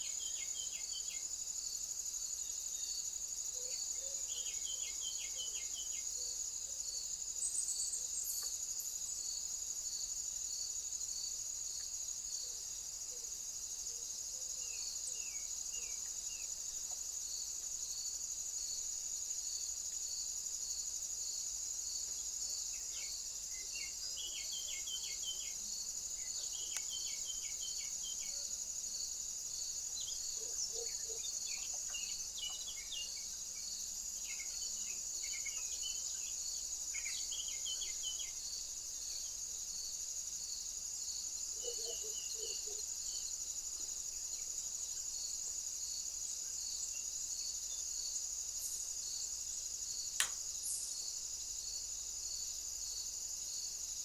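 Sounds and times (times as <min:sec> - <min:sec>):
crickets chirping: 0:00.0 - 0:54.0
sharp click: 0:50.2 - 0:50.4.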